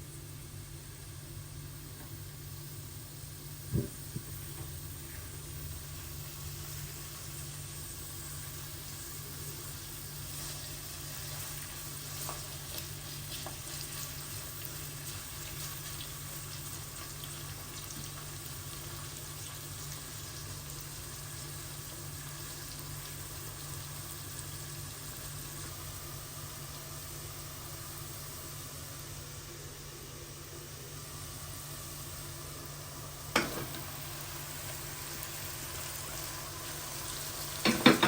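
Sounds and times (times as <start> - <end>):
food sizzling in a pan: 0.0 - 38.0
low steady hum: 0.0 - 38.0.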